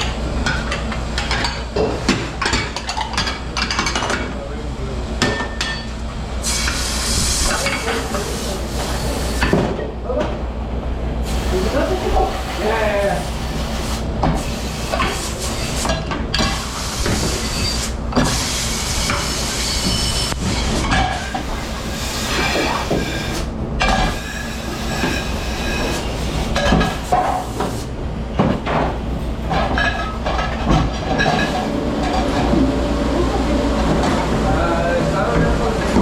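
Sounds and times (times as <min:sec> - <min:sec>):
dishes and utensils clattering: 0:00.0 - 0:04.4, 0:07.5 - 0:08.3, 0:20.6 - 0:21.4, 0:24.8 - 0:27.5, 0:28.4 - 0:32.7
dish machine humming: 0:05.8 - 0:36.0.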